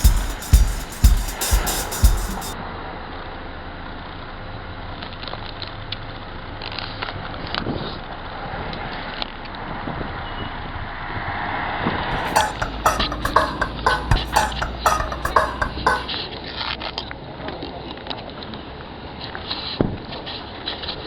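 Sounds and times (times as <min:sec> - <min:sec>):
faint knocks and clicks: 0:12.2 - 0:16.1.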